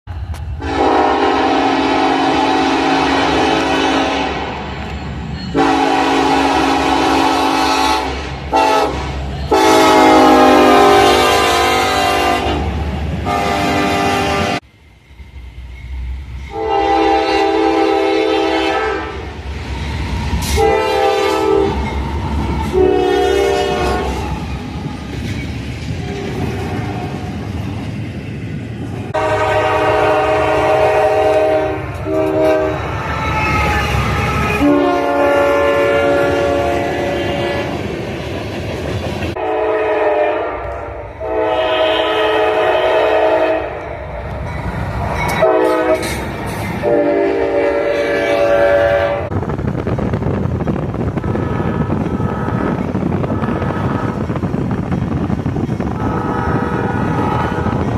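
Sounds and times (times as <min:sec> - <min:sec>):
moving train rumble: 0:00.0 - 0:57.9
locomotive air horn blasts: 0:00.6 - 0:04.6, 0:05.5 - 0:14.6, 0:16.5 - 0:19.3, 0:20.4 - 0:21.9, 0:22.6 - 0:24.3, 0:26.0 - 0:27.2, 0:29.1 - 0:37.8, 0:39.3 - 0:43.8, 0:45.4 - 0:49.3, 0:51.2 - 0:54.2, 0:55.9 - 0:57.8.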